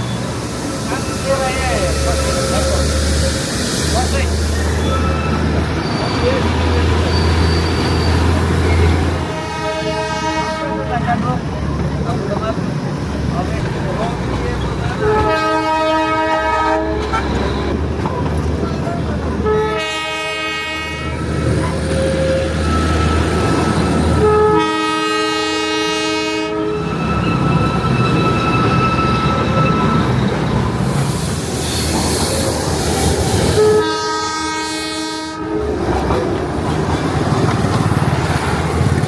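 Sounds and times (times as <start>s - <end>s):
train rumble and wheel clatter: 0.0s - 39.0s
train horn blasts: 9.2s - 10.9s, 15.0s - 17.4s, 19.4s - 21.4s, 22.0s - 30.2s, 33.3s - 35.8s.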